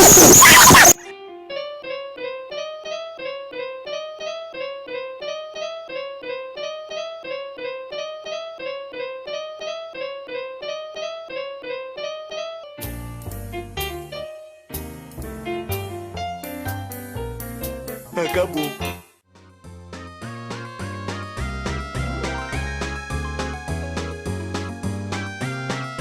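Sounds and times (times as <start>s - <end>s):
loud harsh noise: 0.0s - 1.0s
electric piano tune: 21.9s - 25.2s.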